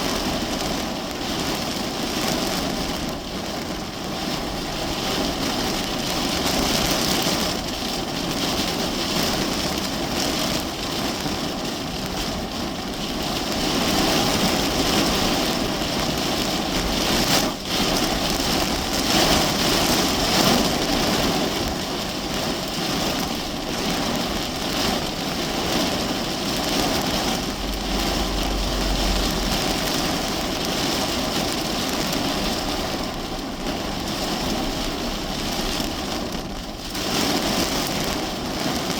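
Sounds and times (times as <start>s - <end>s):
heavy rain on car roof: 0.0s - 38.9s
low rumble: 25.0s - 37.6s.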